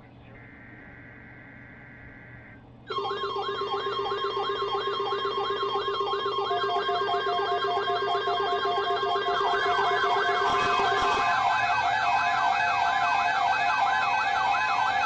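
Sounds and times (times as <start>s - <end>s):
wailing electronic siren: 0.3s - 15.0s
yelping siren: 0.3s - 15.0s
pulsing beep: 0.5s - 11.2s.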